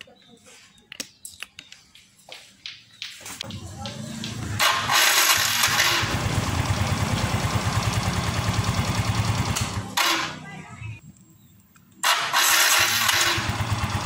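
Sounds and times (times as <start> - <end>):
scooter engine idling: 3.4 - 10.6, 12.4 - 14.0
starter motor harsh grinding: 4.2 - 10.4, 12.0 - 14.0.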